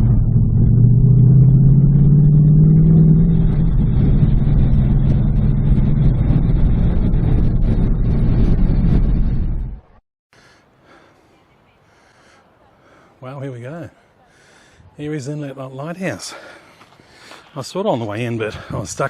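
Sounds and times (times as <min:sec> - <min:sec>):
car engine rumbling: 0:00.0 - 0:10.0.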